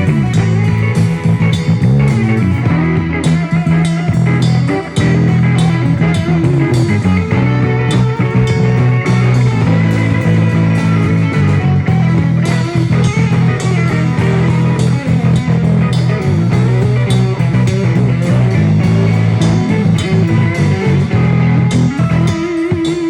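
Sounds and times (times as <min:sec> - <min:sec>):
bass guitar line: 0:00.0 - 0:23.0
drum hits: 0:00.0 - 0:23.0
electric guitar: 0:00.0 - 0:23.0.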